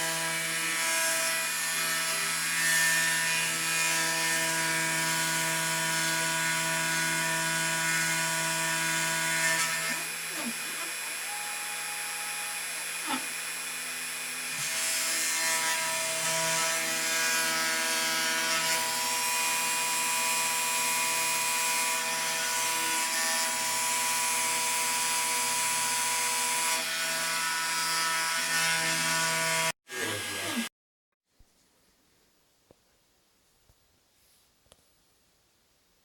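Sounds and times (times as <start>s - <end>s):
rough cutting noise: 0.0s - 19.0s, 28.4s - 30.7s
engraving machine whine: 0.0s - 22.0s, 29.5s - 30.7s.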